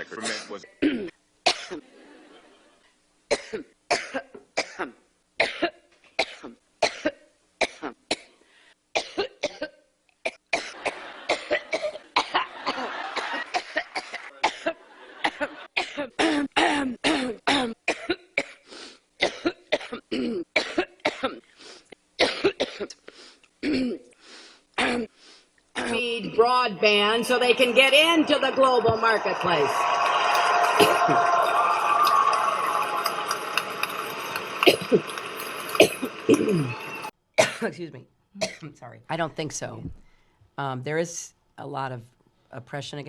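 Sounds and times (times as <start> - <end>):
woman coughing: 0.1 - 1.8, 3.3 - 8.3, 9.0 - 18.6, 19.2 - 21.5, 22.2 - 23.0, 23.6 - 24.1, 24.8 - 25.1, 25.8 - 26.4, 34.6 - 35.0, 35.8 - 37.8, 38.4 - 38.8.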